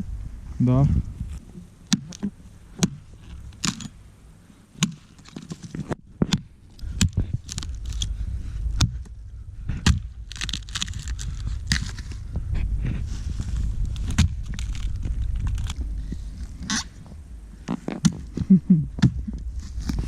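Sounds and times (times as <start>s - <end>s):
crackling rustle of wood: 0.0s - 4.0s, 4.8s - 20.0s
axe chopping wood: 9.8s - 10.1s.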